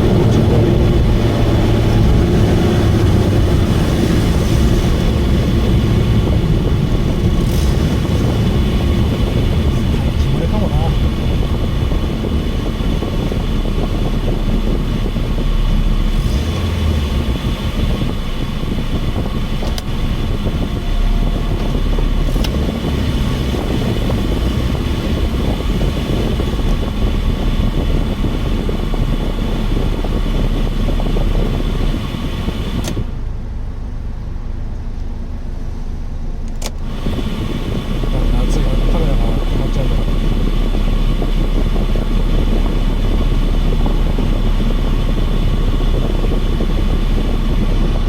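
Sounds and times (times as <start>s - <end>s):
car engine with leaking exhaust: 0.0s - 48.0s
road noise: 0.0s - 48.0s.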